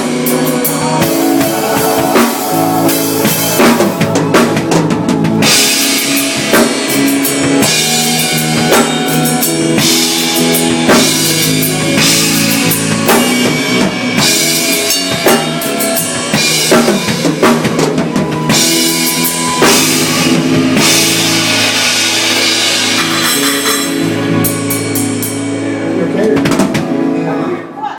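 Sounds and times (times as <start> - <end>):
drum kit beat: 0.0 - 27.1
live rock band playing: 0.0 - 27.8.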